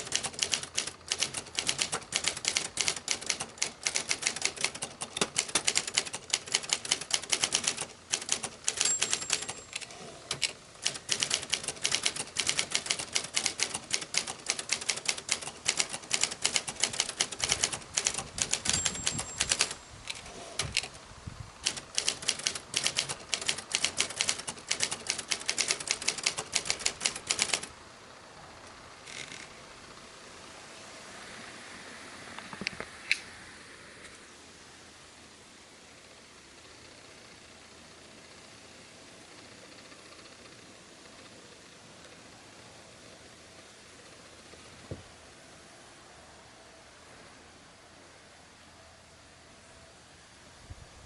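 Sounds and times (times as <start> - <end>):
typewriter typing: 0.0 - 21.0, 21.6 - 27.7.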